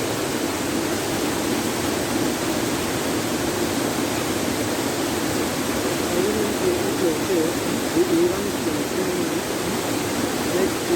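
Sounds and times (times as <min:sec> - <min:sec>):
waterfall rushing water: 0:00.0 - 0:10.9.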